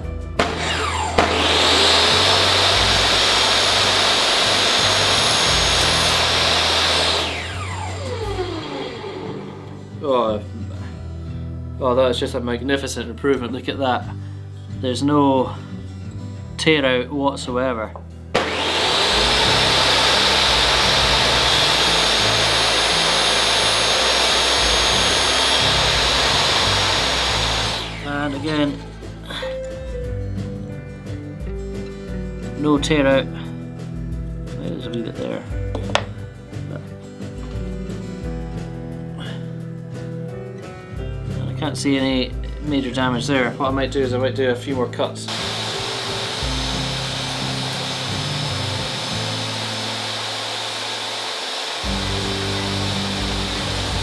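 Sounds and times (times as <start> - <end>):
table saw cutting board: 0.4 - 9.8, 18.4 - 29.4, 45.3 - 54.0
saw motor winding down: 0.4 - 10.0, 18.4 - 29.6, 45.3 - 54.0.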